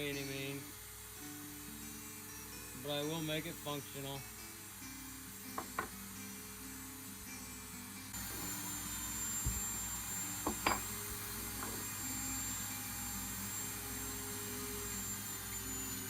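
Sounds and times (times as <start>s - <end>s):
power tool motor whining: 8.2s - 16.0s.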